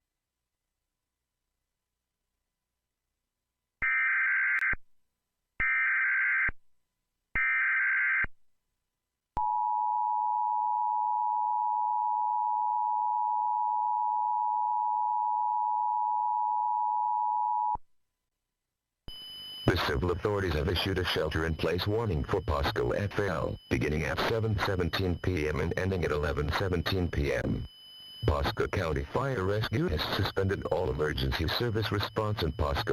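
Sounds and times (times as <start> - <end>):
harsh digital data bursts: 19.1 - 32.9.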